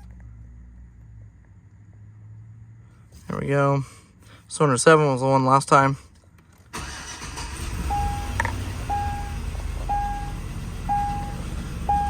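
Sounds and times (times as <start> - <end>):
car engine idling with misfire: 6.7 - 12.0
electronic beep: 7.9 - 11.3.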